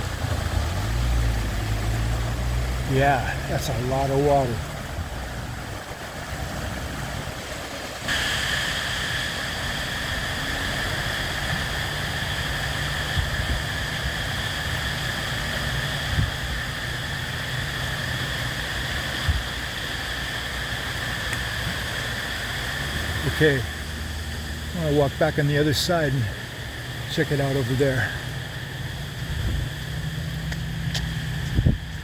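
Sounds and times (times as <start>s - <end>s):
flooding stream rushing: 0.0s - 3.9s, 4.5s - 13.0s.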